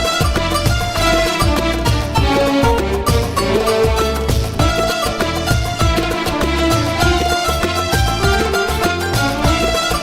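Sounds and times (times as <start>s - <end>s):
background music with driving beat: 0.0s - 10.0s.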